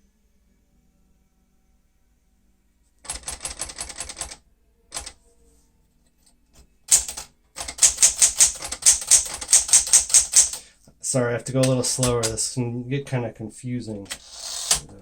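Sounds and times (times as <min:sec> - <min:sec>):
manual typewriter keystrokes: 0:03.0 - 0:05.2, 0:06.9 - 0:10.6, 0:11.6 - 0:12.5, 0:14.0 - 0:15.0.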